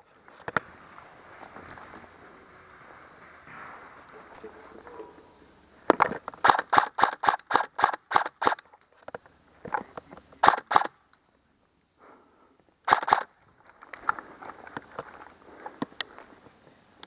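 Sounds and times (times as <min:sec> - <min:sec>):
airsoft rifle shots: 0:06.4 - 0:08.6, 0:10.4 - 0:11.0, 0:12.9 - 0:13.3.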